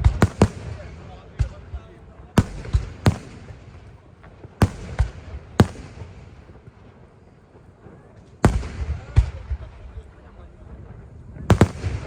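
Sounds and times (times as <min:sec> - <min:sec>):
firework shells bursting: 0:00.0 - 0:01.6, 0:02.4 - 0:06.8, 0:08.4 - 0:09.7.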